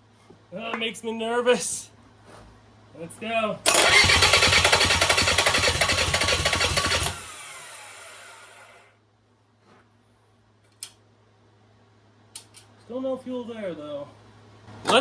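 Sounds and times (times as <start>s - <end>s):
diesel engine cranking: 3.7s - 8.7s
starter falling whine: 3.7s - 8.8s.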